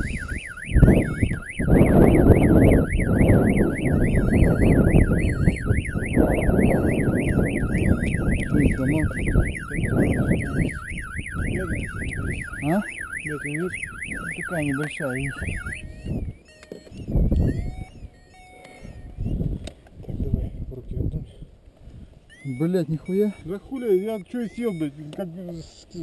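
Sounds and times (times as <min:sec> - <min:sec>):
wind buffeting microphone: 0:00.0 - 0:16.4, 0:17.0 - 0:18.2, 0:18.8 - 0:22.3
warbling electronic tone: 0:00.0 - 0:18.6.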